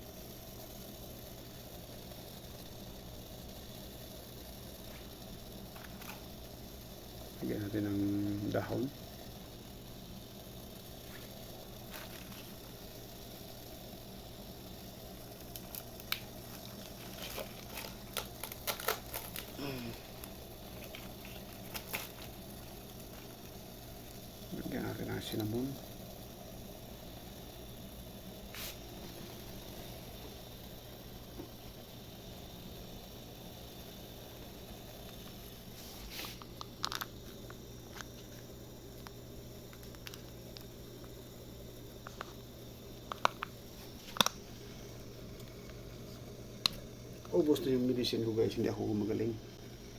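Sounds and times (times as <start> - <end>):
steady low hum: 0.0 - 49.9
leaves crinkling: 15.5 - 23.5.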